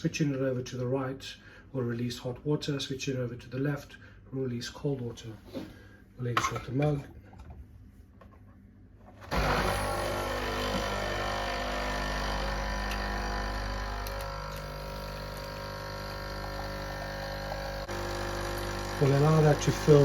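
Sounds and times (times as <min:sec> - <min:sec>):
capsule machine pump humming: 0:09.3 - 0:20.0.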